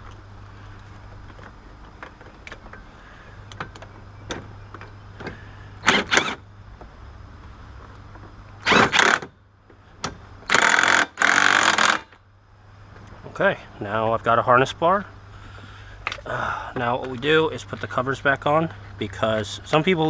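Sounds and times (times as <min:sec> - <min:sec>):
steady low hum: 0:00.0 - 0:20.0
ratchet wrench ratcheting: 0:10.5 - 0:12.1.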